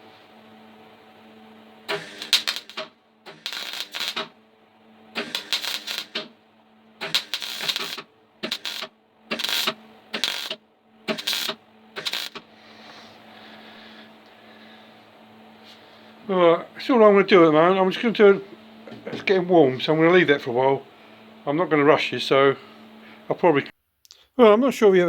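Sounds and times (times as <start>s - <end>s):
welder hum: 0.0s - 23.3s
arc welder crackling: 1.8s - 4.4s, 5.1s - 12.8s.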